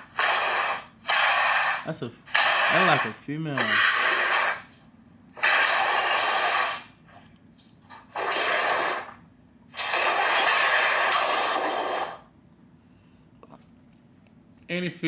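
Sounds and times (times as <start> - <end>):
loud harsh bursts of noise: 0.2 - 4.7.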